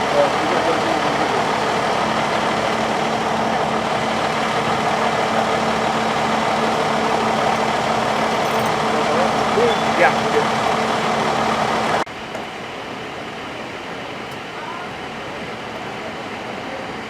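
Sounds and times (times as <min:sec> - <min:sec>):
engine idling: 0:00.0 - 0:12.1.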